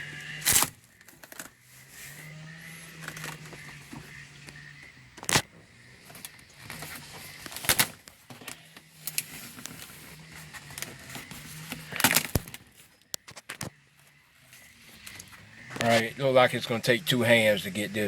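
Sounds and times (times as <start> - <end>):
dash pad cracking and snapping: 0.4 - 1.5, 5.2 - 5.6, 7.4 - 9.7, 10.8 - 13.7.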